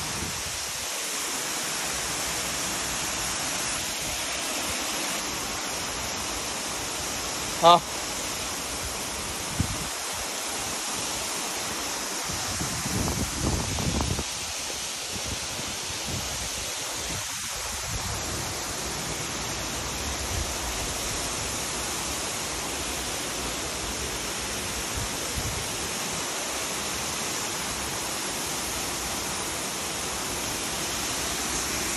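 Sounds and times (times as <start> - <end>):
waterfall rushing: 0.0 - 31.9.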